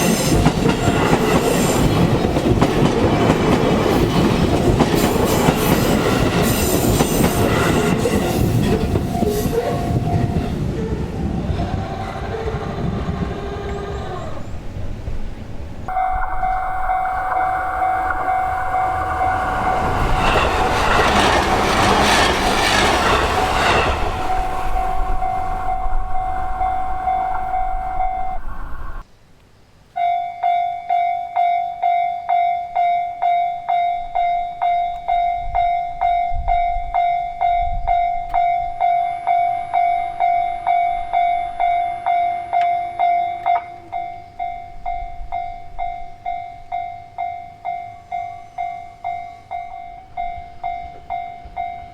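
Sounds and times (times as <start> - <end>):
train wheels clattering: 0.0 - 13.4, 15.9 - 27.4
electric train rushing past: 0.0 - 29.0, 34.0 - 51.9
level crossing bell ringing: 15.9 - 21.3, 23.6 - 28.4.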